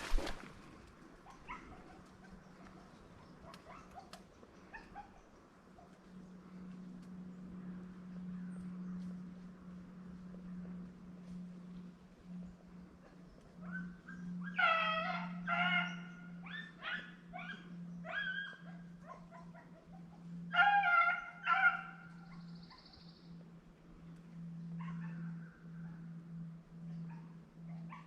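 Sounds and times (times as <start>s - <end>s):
hounds baying: 1.2s - 6.2s, 13.1s - 23.0s, 24.5s - 28.0s.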